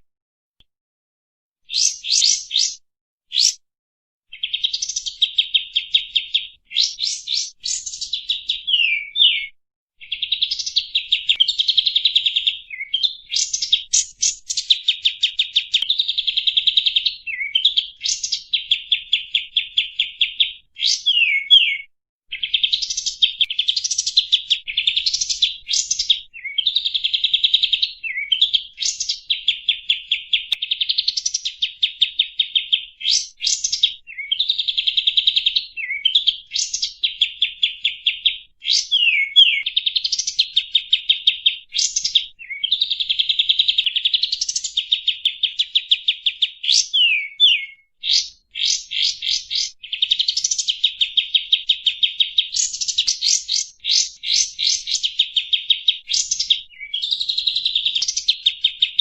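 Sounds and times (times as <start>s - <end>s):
bird singing trills and whistles: 1.6s - 3.6s, 4.3s - 59.0s.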